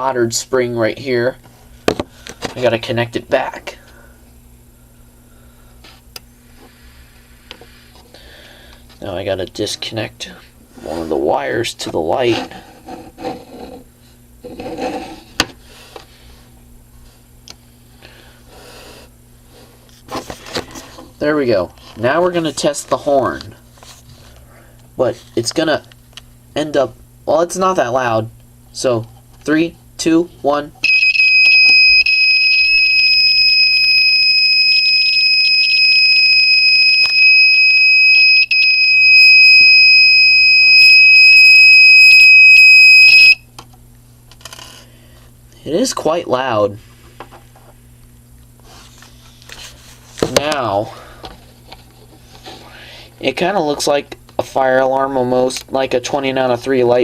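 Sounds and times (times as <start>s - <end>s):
high-pitched alarm horn tone: 30.8s - 43.4s.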